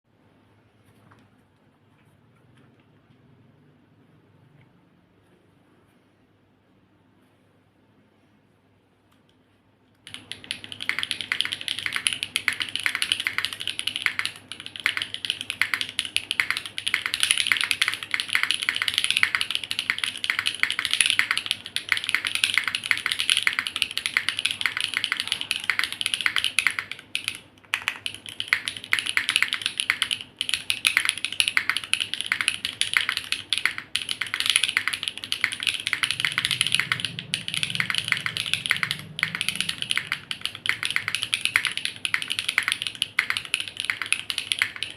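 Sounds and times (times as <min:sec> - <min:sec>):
fast typing on mechanical keyboard: 0:10.0 - 0:44.9.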